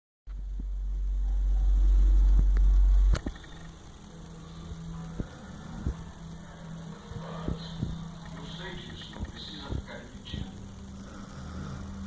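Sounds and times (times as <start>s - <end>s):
faint low hum: 0.3s - 12.0s
loud low snore: 10.9s - 12.0s.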